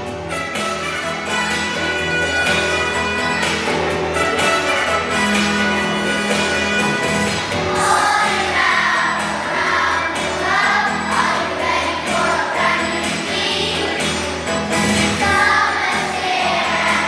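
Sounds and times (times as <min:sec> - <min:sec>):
instrumental music: 0:00.0 - 0:17.0
choir singing: 0:07.3 - 0:17.0.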